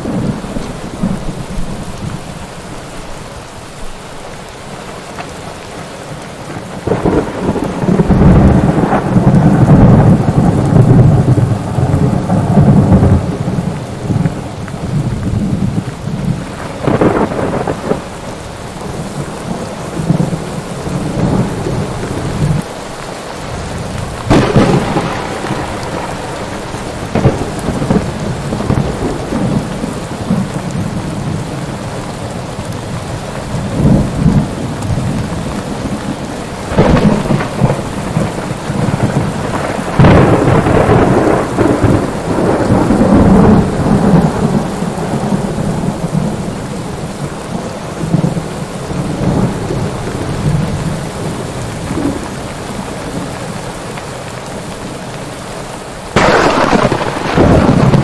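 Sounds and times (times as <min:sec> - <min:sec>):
thunder rumbling: 0:00.0 - 0:04.2, 0:04.9 - 0:53.6, 0:56.1 - 0:58.0
rain falling steadily: 0:00.0 - 0:58.0.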